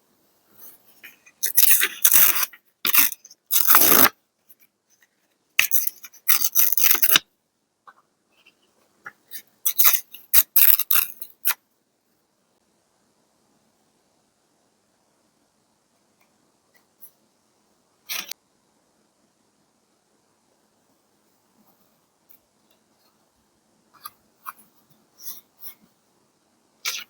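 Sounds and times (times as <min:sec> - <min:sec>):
paper scraping and rustling: 0:00.6 - 0:04.1.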